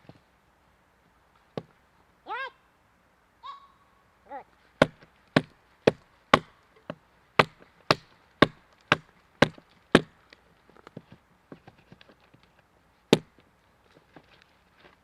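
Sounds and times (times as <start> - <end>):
axe chopping wood: 4.8 - 10.2, 13.1 - 13.4.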